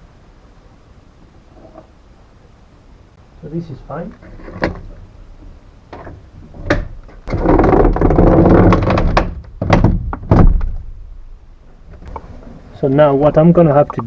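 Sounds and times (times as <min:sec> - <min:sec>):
loud scraping rattle: 0:06.0 - 0:09.4
knocks and clunks of car panels: 0:06.0 - 0:10.9.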